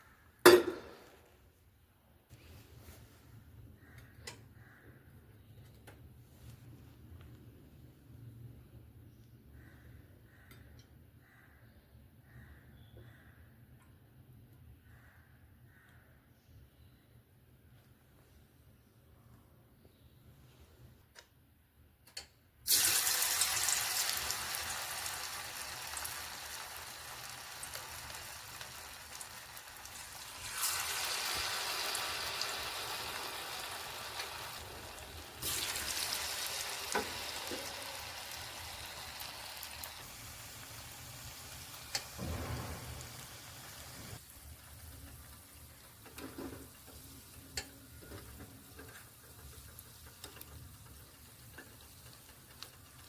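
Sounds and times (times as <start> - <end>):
snacks sizzling in hot oil: 22.7 - 53.0.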